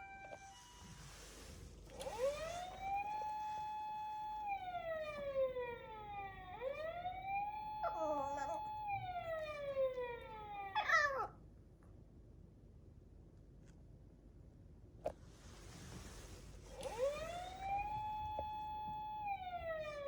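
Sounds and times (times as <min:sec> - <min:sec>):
siren from phone speaker: 0:00.0 - 0:01.2, 0:02.0 - 0:11.2, 0:16.8 - 0:20.0
dog howling: 0:07.7 - 0:09.5, 0:10.3 - 0:11.3.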